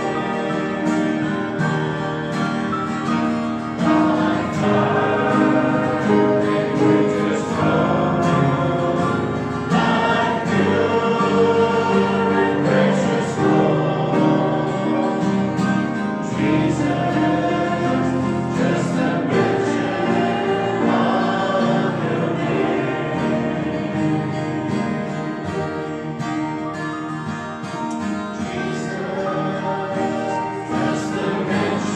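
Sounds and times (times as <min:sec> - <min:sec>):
congregation singing a hymn: 0:00.0 - 0:31.9
guitar accompaniment: 0:00.0 - 0:31.9.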